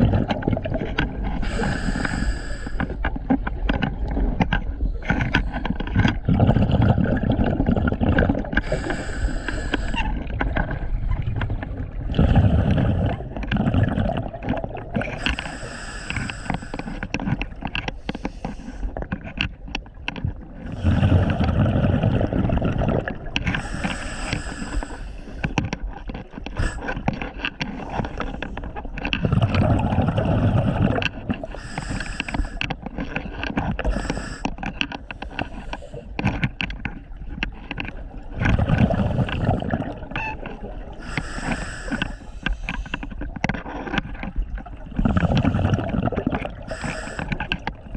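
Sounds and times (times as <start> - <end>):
exhaled bubbles bursting: 0.0 - 2.6, 5.9 - 15.7, 20.4 - 24.9, 29.1 - 31.8, 38.3 - 41.2, 44.4 - 47.9
regulator inhale hiss: 1.4 - 3.0, 8.6 - 10.1, 15.2 - 17.1, 18.0 - 18.9, 23.6 - 25.6, 26.6 - 27.0, 31.5 - 32.6, 33.8 - 36.1, 41.0 - 43.0, 46.7 - 47.5.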